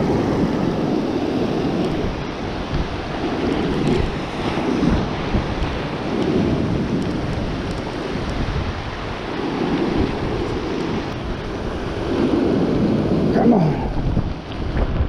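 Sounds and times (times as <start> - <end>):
heavy rain: 0.0 - 15.0
surf breaking on shore: 0.0 - 15.0
wind buffeting microphone: 0.0 - 15.0.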